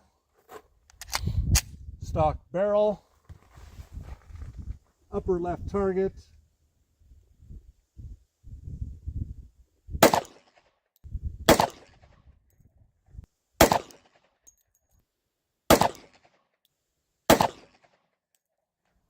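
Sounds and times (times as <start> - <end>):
pistol shots: 10.0 - 10.6, 11.5 - 12.0, 13.6 - 14.2, 15.7 - 16.3, 17.3 - 17.9.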